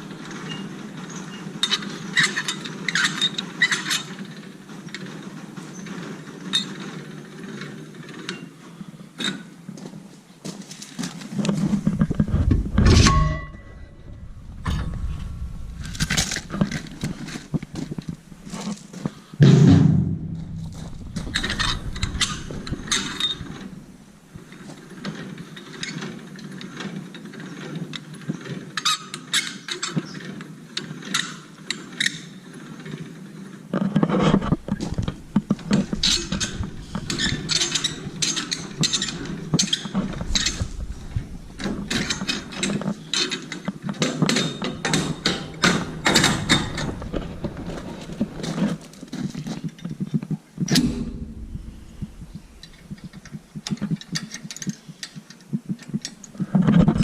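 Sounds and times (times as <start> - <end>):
steady low hum: 11.5 - 25.0, 34.2 - 43.2, 44.5 - 50.0, 50.6 - 54.5
trailer hitch and chains clanking: 11.6 - 27.8, 34.2 - 50.0.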